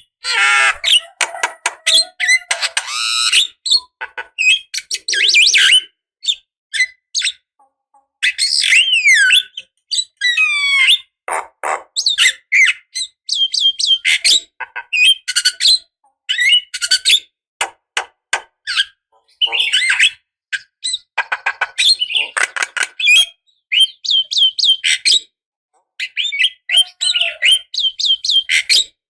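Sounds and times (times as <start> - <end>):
myna squawks and chattering: 0.2 - 5.8, 10.2 - 12.4, 18.7 - 23.3, 26.1 - 28.8.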